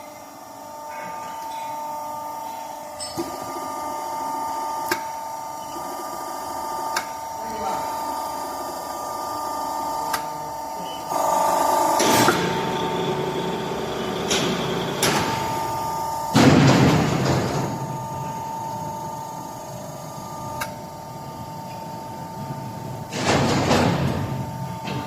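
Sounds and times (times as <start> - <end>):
crimping machine whine: 8.8 - 25.0.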